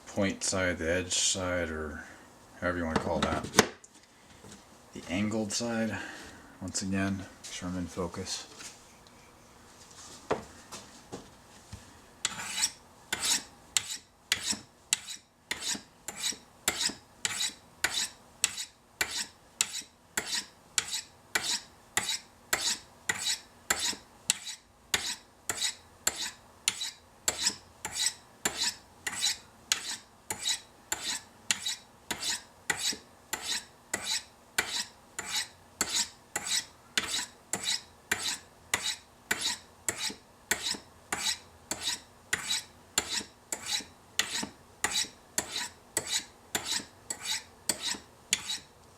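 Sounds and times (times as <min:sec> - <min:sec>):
knife scraping on ceramic rods: 0:12.2 - 0:48.7.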